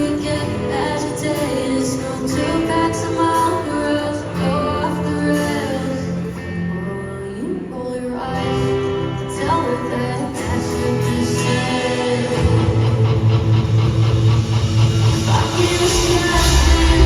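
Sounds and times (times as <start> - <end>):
person singing: 0.0 - 13.5, 15.2 - 17.0
live band music: 10.5 - 17.0
heavy low bass: 12.3 - 17.0.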